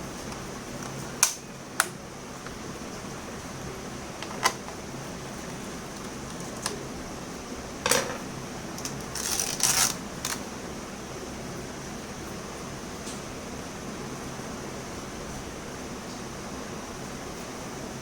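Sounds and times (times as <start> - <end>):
steady background hiss: 0.0 - 18.0.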